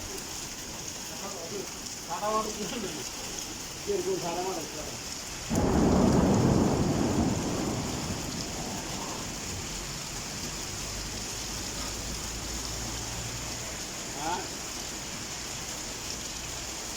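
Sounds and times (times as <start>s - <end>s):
heavy rain hissing: 0.0s - 16.9s
thunderclap rumbling: 5.5s - 10.5s.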